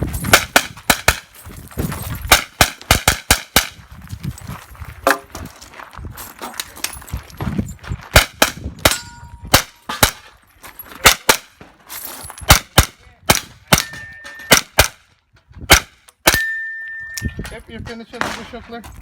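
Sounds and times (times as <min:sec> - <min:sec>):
pistol shots: 0:00.3 - 0:01.3, 0:02.3 - 0:03.8, 0:08.2 - 0:10.2, 0:11.0 - 0:11.5, 0:12.5 - 0:15.0, 0:15.7 - 0:16.5
steel targets clanging: 0:08.9 - 0:10.4, 0:13.7 - 0:14.8, 0:16.3 - 0:17.6.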